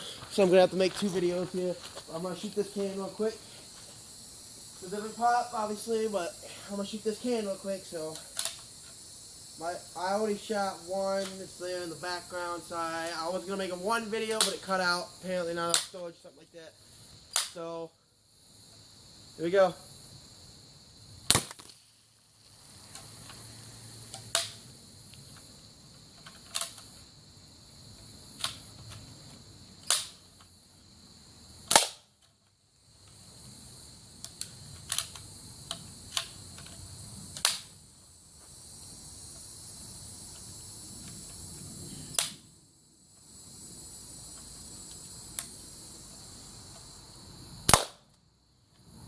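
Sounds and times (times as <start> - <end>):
gunshots: 21.3 - 21.7.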